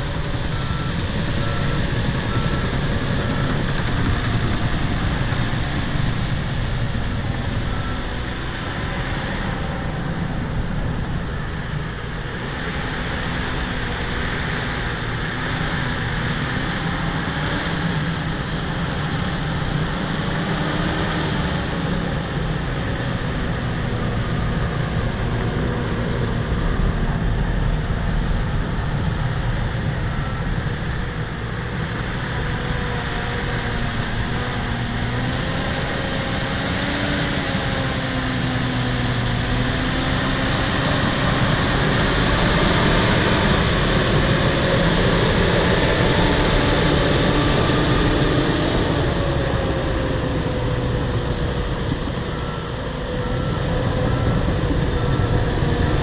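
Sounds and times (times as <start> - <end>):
bulldozer diesel engine running: 0.0 - 56.0.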